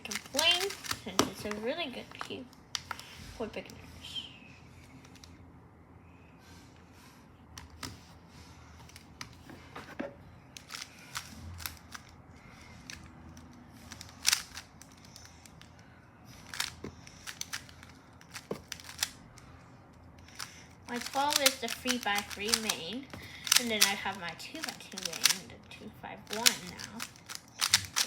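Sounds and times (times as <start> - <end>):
speed cube plastic clicks: 0.0 - 3.8, 4.7 - 5.4, 7.6 - 8.0, 10.5 - 28.0.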